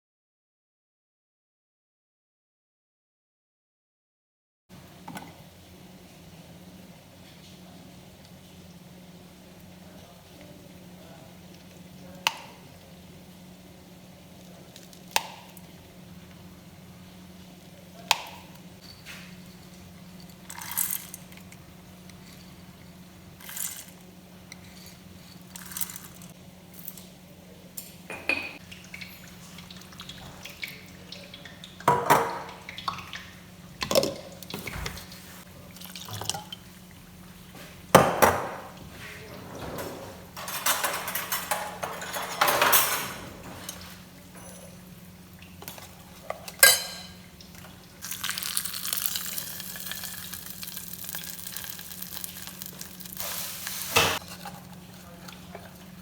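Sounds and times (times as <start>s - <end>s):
dishes and utensils clinking: 27.8s - 29.4s, 38.0s - 44.8s, 45.6s - 47.2s, 53.2s - 54.6s
liquid pouring: 47.4s - 53.2s.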